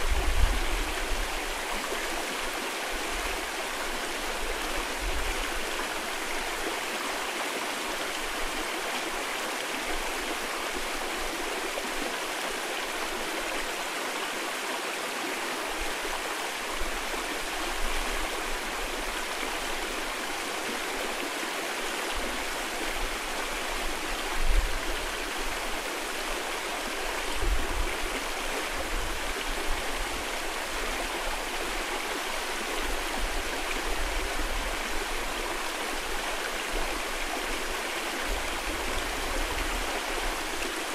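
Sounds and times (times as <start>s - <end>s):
wind buffeting microphone: 0.0s - 1.5s
stream rushing: 0.0s - 40.9s.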